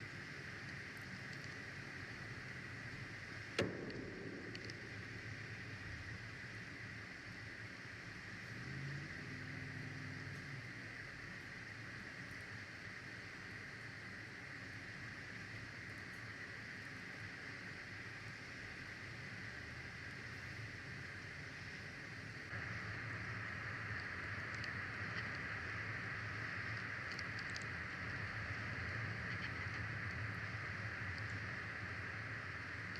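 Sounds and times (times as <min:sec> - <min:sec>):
steady background hiss: 0:00.0 - 0:32.9
faint high ticks: 0:00.6 - 0:02.3, 0:23.8 - 0:31.6
loud bang with echo: 0:03.6 - 0:05.7.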